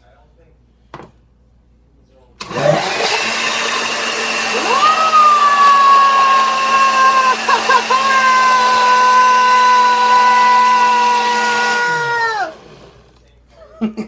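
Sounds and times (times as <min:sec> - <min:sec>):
electric blender running: 0:02.4 - 0:13.2.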